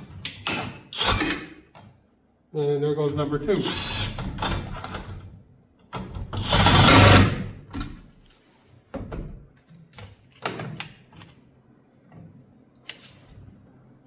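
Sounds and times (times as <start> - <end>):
loud rattling clatter: 6.4 - 7.5.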